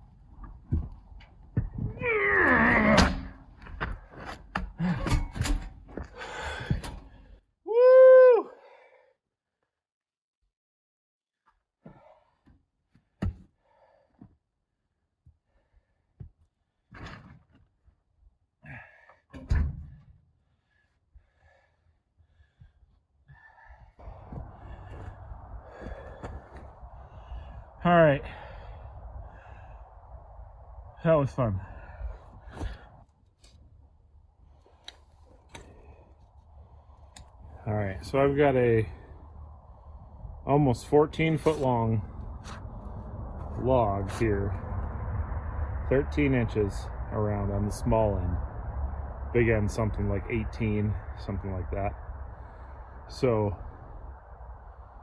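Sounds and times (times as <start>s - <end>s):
person groaning with effort: 1.9s - 3.2s
man breathing hard and gasping: 6.0s - 7.4s, 20.5s - 30.0s
steady rushing noise: 24.0s - 33.0s, 35.5s - 55.0s.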